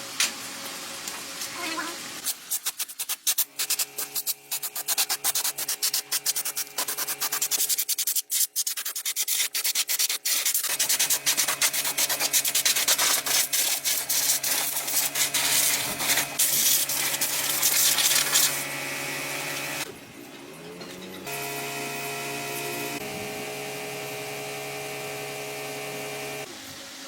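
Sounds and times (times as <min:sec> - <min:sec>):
sanding hiss: 0:02.2 - 0:18.6
sanding rubbing strokes: 0:02.3 - 0:18.6.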